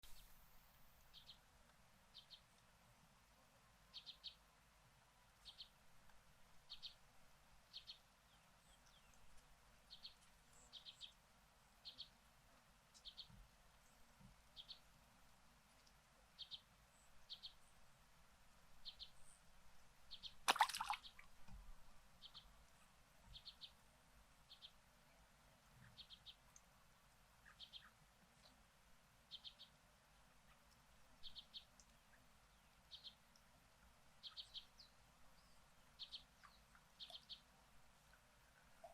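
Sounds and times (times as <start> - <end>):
small bird chirping: 14.6 - 14.8, 23.2 - 23.8, 25.8 - 26.6, 27.4 - 28.6, 29.3 - 29.8, 30.4 - 33.2, 34.2 - 37.5.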